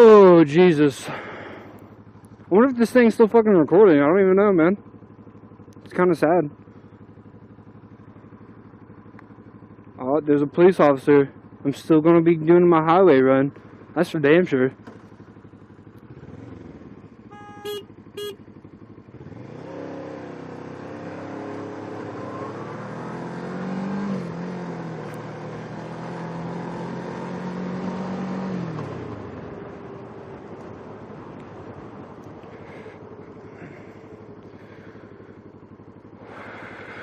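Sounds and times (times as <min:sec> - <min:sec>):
motorcycle engine accelerating: 0:00.0 - 0:37.0
short beeps: 0:17.3 - 0:18.4.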